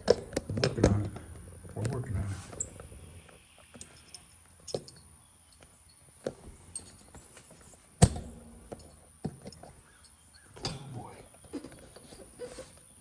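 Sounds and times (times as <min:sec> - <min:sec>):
clicks and knocks of tools: 0:08.6 - 0:11.0.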